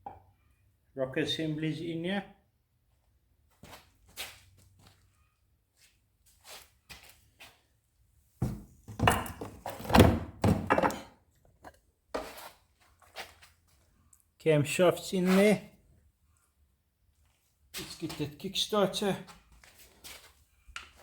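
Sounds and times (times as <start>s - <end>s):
metal parts knocking and clunking: 8.4s - 11.8s.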